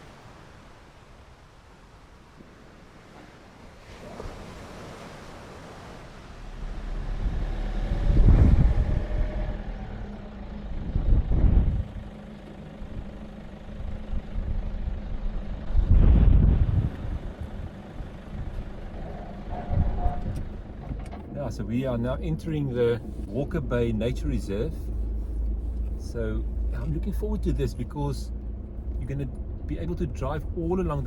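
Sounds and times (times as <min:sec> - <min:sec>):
low engine drone: 0:06.3 - 0:31.0
deep rumbling swells: 0:06.4 - 0:31.0.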